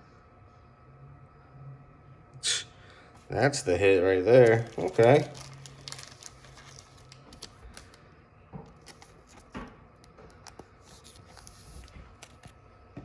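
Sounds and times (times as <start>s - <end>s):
cards clicking and tapping: 8.6s - 12.5s.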